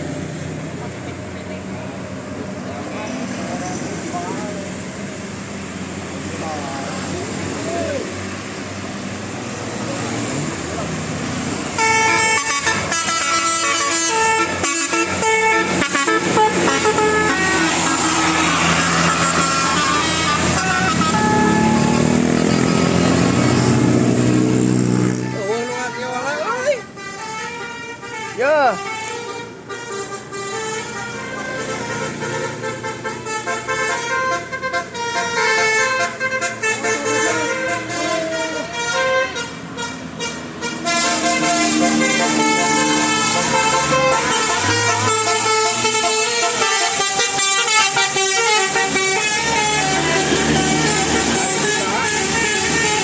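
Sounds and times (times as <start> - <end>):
bus musical horn tune: 11.7 - 53.0.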